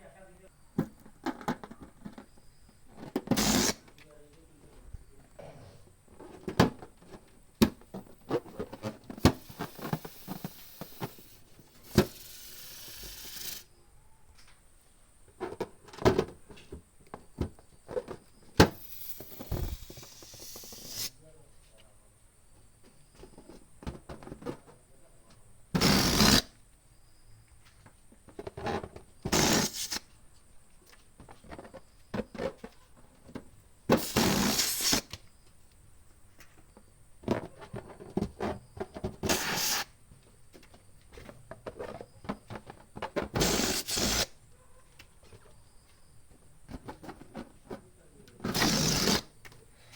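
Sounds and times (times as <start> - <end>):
balloon pump pushing air: 3.3 - 3.9, 8.5 - 13.7, 18.6 - 21.2, 25.8 - 26.5, 29.3 - 30.0, 33.9 - 35.2, 39.2 - 40.0, 43.3 - 44.3, 48.4 - 49.3
pump and balloons clicking: 8.5 - 13.7, 18.6 - 21.1, 25.8 - 26.5, 39.2 - 39.9, 43.3 - 44.3, 48.5 - 49.3.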